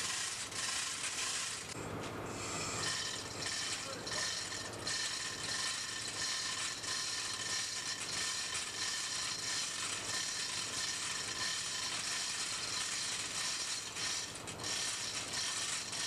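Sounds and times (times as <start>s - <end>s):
faint steady tones: 1.6s - 14.4s.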